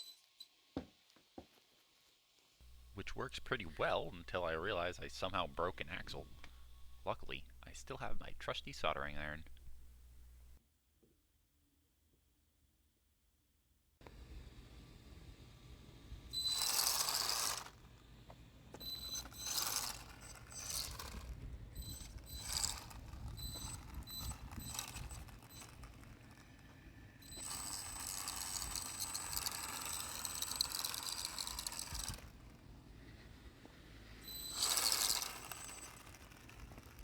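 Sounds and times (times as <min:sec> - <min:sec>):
electric motors whining: 0:16.4 - 0:17.9, 0:18.8 - 0:32.6, 0:34.2 - 0:37.0.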